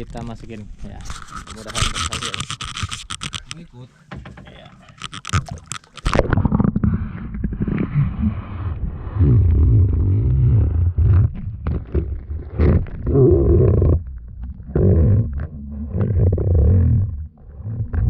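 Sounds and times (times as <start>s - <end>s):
low underwater rumble: 5.0s - 18.0s.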